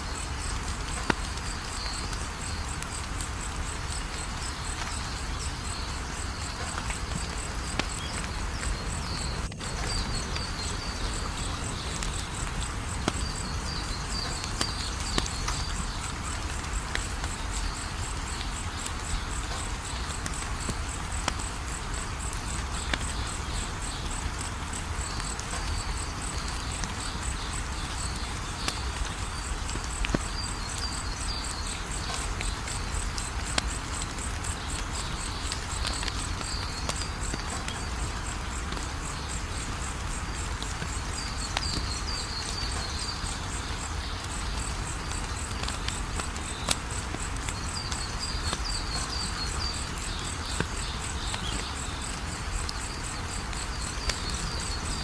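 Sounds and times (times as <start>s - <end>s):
fire popping and snapping: 0.1s - 55.0s
wood fire crackling: 0.1s - 55.0s.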